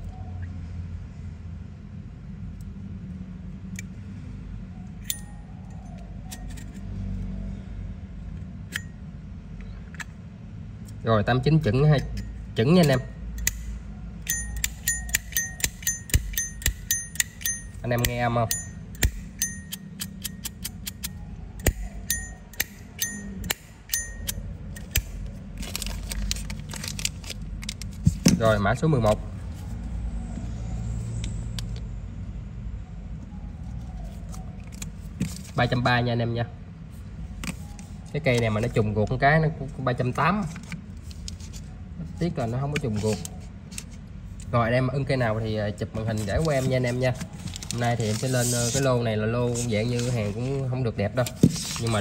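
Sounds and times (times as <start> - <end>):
steady low hum: 0.0 - 52.0
bell-like ping: 21.8 - 24.4.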